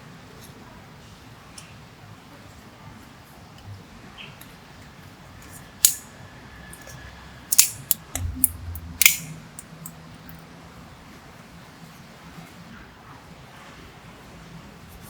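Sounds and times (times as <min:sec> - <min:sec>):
small hard parts clicking: 0:07.5 - 0:09.9.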